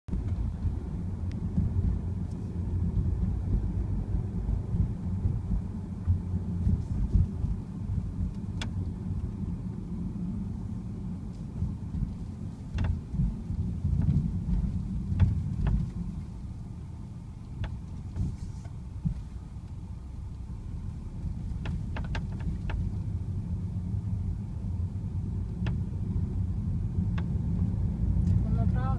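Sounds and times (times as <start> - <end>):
car road and engine rumble: 0.0 - 28.9
dashboard creaks: 21.5 - 23.0.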